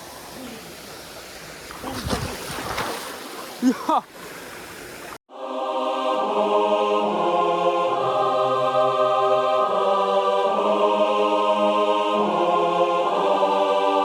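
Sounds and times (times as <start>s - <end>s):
faint water and wind noise: 0.0s - 5.2s.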